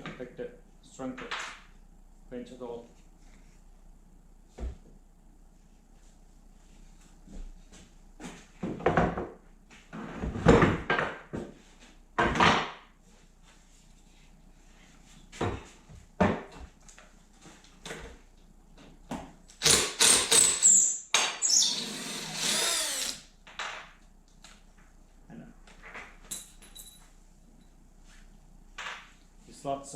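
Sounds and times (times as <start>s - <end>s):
cordless drill running: 19.6s - 20.8s, 21.4s - 23.3s.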